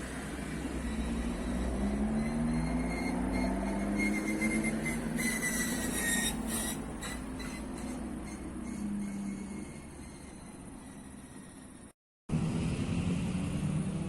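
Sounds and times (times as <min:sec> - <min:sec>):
car engine pulling away: 0:00.0 - 0:07.1, 0:12.3 - 0:14.0.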